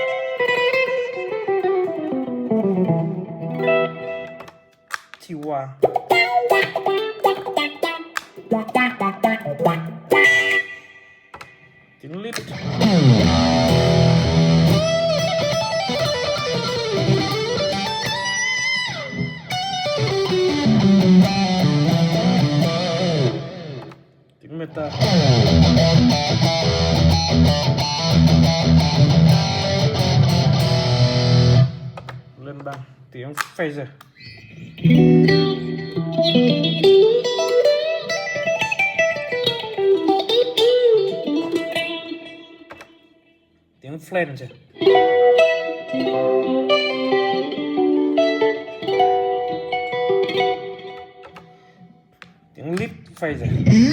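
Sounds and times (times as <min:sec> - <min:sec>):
electric guitar lead melody: 0:00.0 - 0:05.0, 0:05.8 - 0:24.2, 0:24.8 - 0:32.3, 0:34.2 - 0:43.4, 0:44.6 - 0:52.3, 0:53.5 - 0:53.9.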